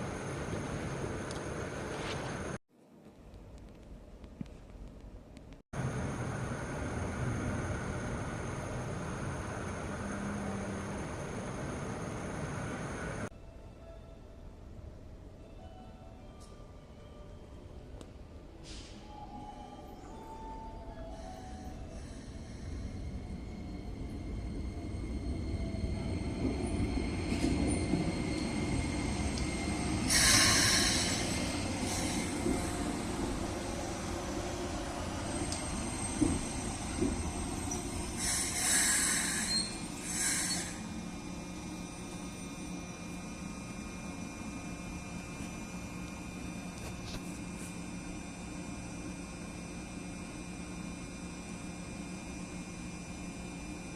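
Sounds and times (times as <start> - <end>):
electric train rumbling: 0.0 - 2.6, 5.8 - 14.0, 14.8 - 53.9
loud hiss: 30.1 - 32.4, 38.2 - 40.9.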